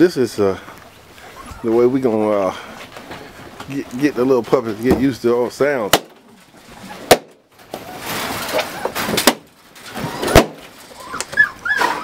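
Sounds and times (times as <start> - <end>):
loud sharp bangs: 7.0 - 7.4, 9.0 - 9.5, 10.2 - 10.7.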